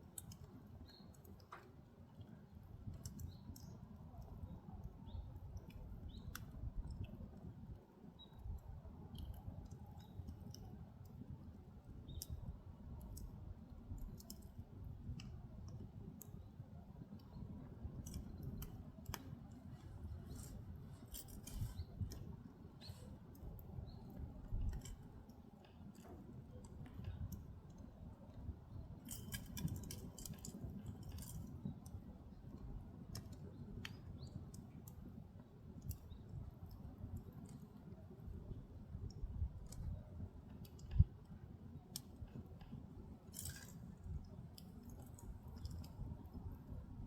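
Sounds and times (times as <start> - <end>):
firewood crackling and popping: 17.2 - 38.0, 40.5 - 46.4.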